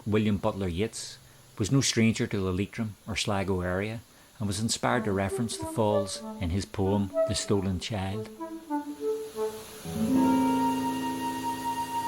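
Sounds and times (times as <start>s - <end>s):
music with slow held chord: 4.9s - 12.0s.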